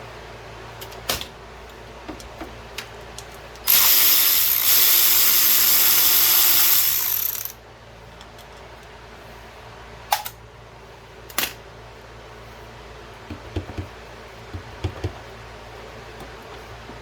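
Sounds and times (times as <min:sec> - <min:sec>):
power tool driving a bolt: 0:03.7 - 0:07.6.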